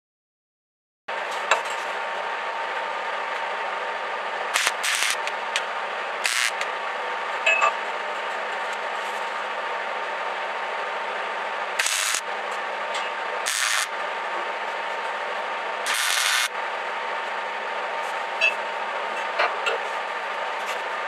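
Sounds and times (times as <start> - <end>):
electric welder humming: 3.2 - 7.4, 8.7 - 17.0
welding arc crackle: 4.5 - 6.7, 11.8 - 12.3, 13.4 - 14.0, 15.8 - 16.5.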